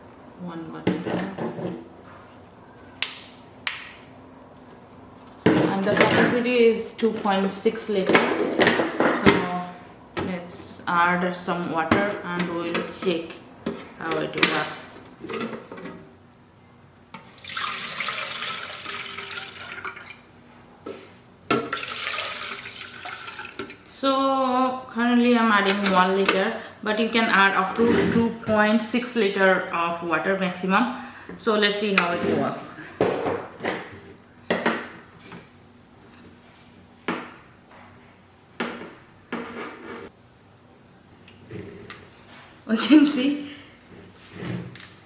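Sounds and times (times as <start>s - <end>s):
water pouring into tank: 17.3s - 20.2s, 21.7s - 23.8s.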